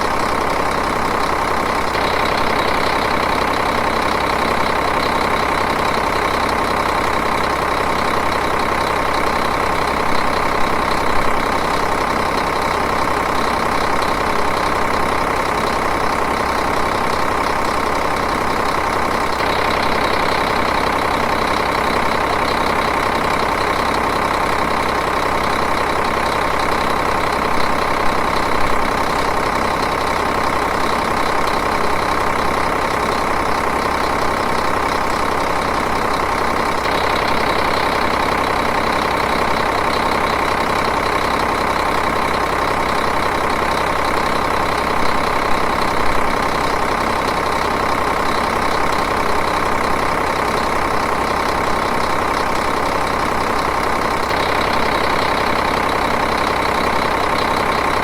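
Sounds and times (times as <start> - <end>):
diesel engine idling: 0.0 - 58.0.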